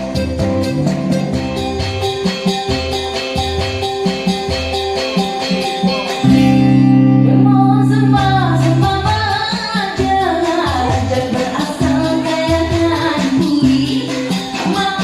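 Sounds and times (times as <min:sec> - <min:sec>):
live band music: 0:00.0 - 0:15.0
person singing: 0:05.6 - 0:15.0.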